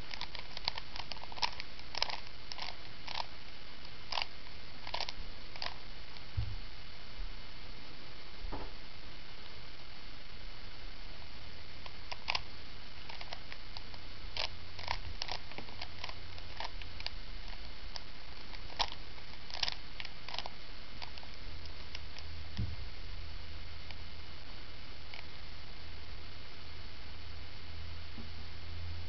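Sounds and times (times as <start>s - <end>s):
low hum and hiss: 0.0s - 29.0s
puzzle cube layers clicking: 0.1s - 3.3s, 4.1s - 5.8s, 11.8s - 12.5s, 13.1s - 21.3s.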